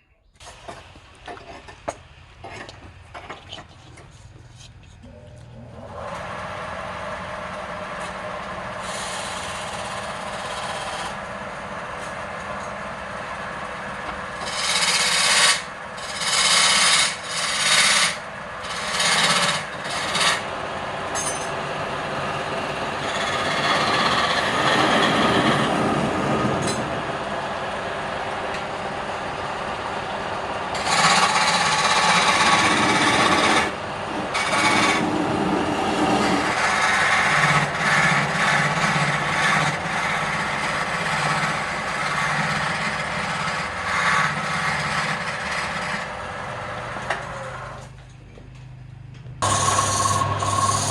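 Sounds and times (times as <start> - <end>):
wood lathe running: 5.1 - 47.8, 49.4 - 50.9
rasping on spinning wood: 8.8 - 11.3, 14.3 - 20.5, 21.9 - 26.8, 30.7 - 46.2, 49.4 - 50.9.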